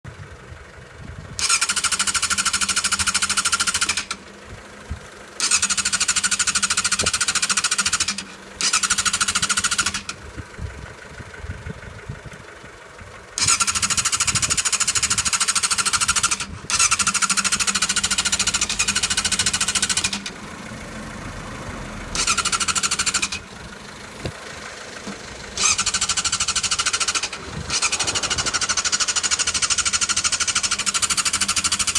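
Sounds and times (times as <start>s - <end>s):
electric starter cranking engine: 1.4s - 12.2s, 13.2s - 21.4s, 22.0s - 31.9s.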